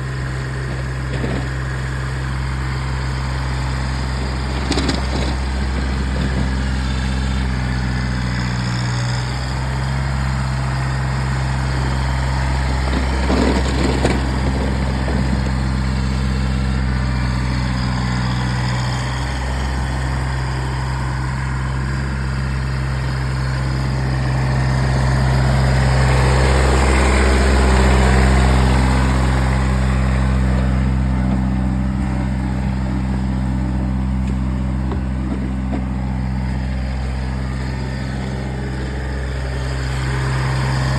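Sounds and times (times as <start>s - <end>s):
tractor diesel engine running: 0.0s - 40.9s
short clatter: 0.2s - 2.0s, 4.1s - 7.5s.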